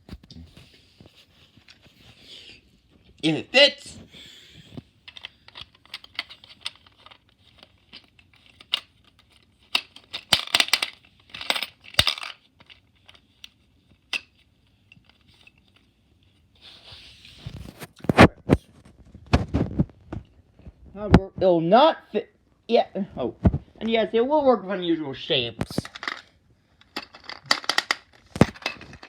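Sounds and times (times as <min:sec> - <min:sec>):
coins clicking and rattling: 0:08.3 - 0:12.4.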